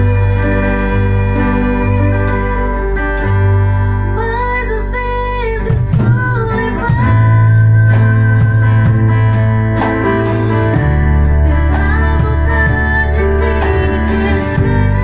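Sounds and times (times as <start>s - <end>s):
person singing: 0.0s - 9.5s, 11.2s - 15.0s
guitar: 0.0s - 15.0s
keyboard chords: 0.0s - 15.0s
drums and cymbals: 5.7s - 15.0s.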